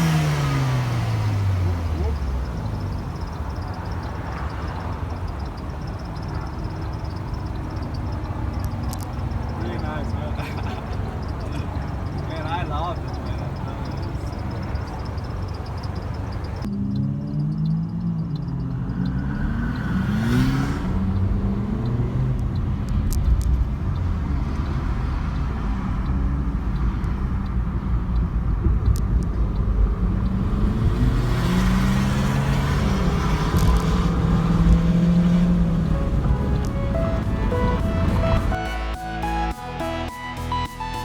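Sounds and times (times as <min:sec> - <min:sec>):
car engine revving: 0:00.0 - 0:41.0
steady low rumble: 0:34.2 - 0:41.0.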